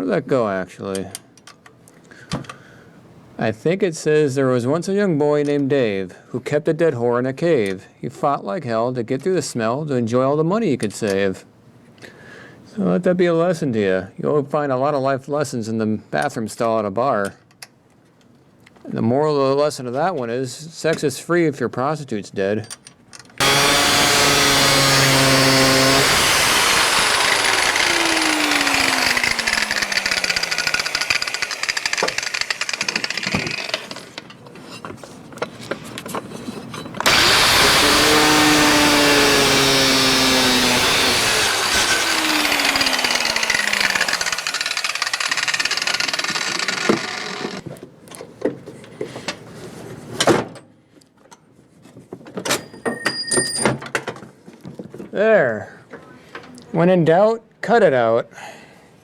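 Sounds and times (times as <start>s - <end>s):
power tool cutting bolt: 23.4s - 34.2s, 37.0s - 47.6s.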